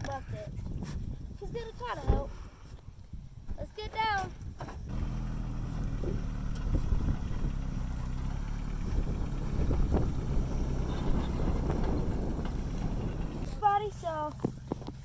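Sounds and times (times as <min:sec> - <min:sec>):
vehicle engine running: 0:04.9 - 0:15.0.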